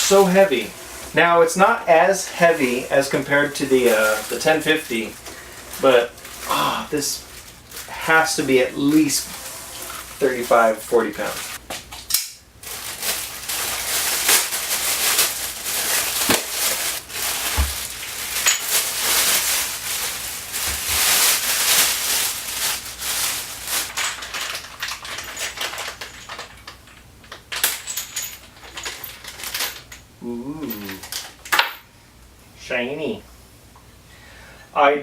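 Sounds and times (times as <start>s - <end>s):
packaging crinkling: 2.3s - 26.8s.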